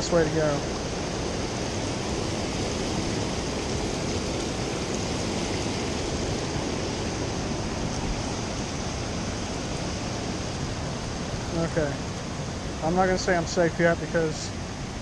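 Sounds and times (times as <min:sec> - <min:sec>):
waterfall roar: 0:00.0 - 0:15.0.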